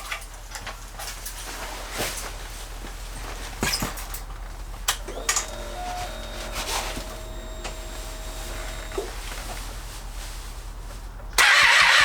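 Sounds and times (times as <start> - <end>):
ignition key clicks: 4.9 - 9.2
steady electronic whine: 5.1 - 9.2.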